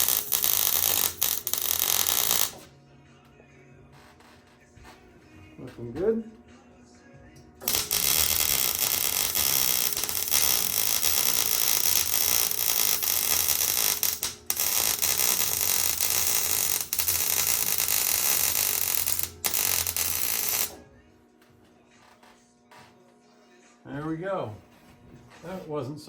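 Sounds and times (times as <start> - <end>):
arc welder hissing: 0.0 - 2.7, 7.6 - 20.8.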